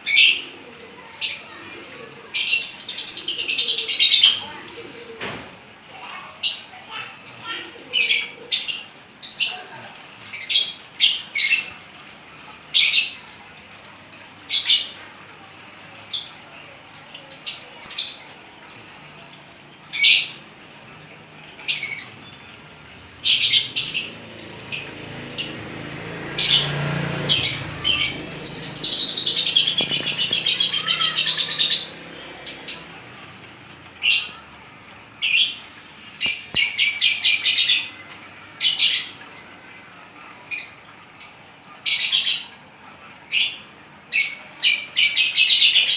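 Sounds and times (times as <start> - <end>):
lovebird chirping: 23.3 - 33.0
lovebird chattering: 27.3 - 33.0.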